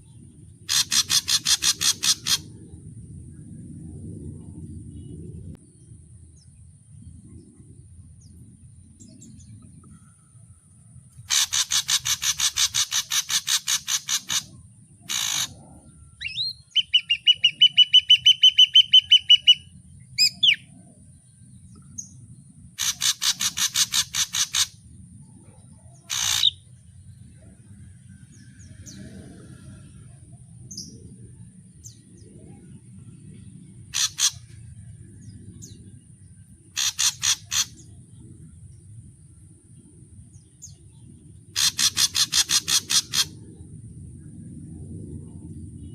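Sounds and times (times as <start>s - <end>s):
bird sharp calls: 0.6s - 2.5s, 11.2s - 15.6s, 16.2s - 20.7s, 22.8s - 24.8s, 26.0s - 26.6s, 33.9s - 34.6s, 36.7s - 38.0s, 41.5s - 43.4s
bird whistled notes: 16.2s - 20.7s.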